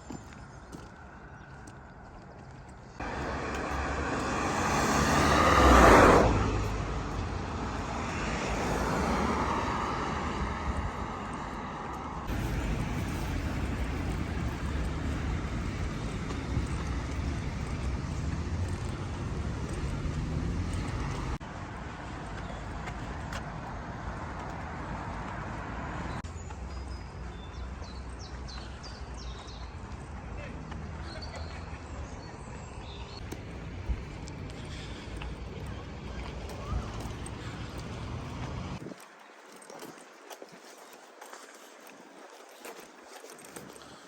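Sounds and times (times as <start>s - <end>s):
steady traffic noise: 0.0s - 40.0s
vehicle passing close: 3.0s - 21.4s, 33.2s - 38.8s.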